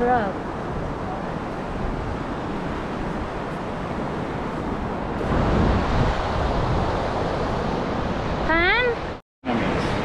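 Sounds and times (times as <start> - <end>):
ocean surf washing in: 0.0 - 10.0
wind rumbling on microphone: 0.0 - 10.0.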